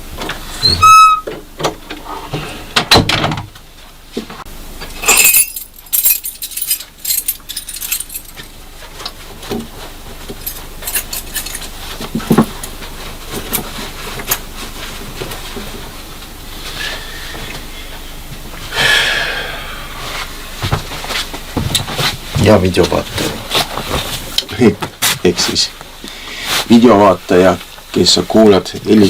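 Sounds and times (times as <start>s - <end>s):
short squeak: 0.5s - 1.3s
objects clicking and rattling: 4.9s - 9.6s, 10.3s - 14.4s.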